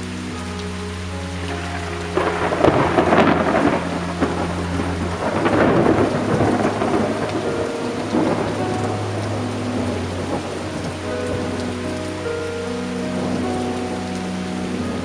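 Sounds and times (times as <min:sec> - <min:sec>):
steady rain: 0:00.0 - 0:15.0
thunder rumbling: 0:00.0 - 0:15.0.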